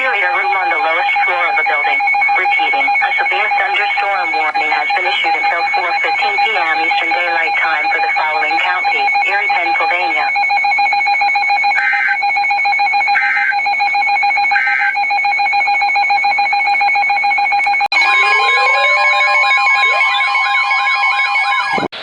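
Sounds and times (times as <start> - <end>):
long steady alert tone: 0.0 - 21.9
short digital squawks: 11.8 - 12.2, 13.1 - 13.6, 14.5 - 15.0
warbling tones: 17.7 - 22.0.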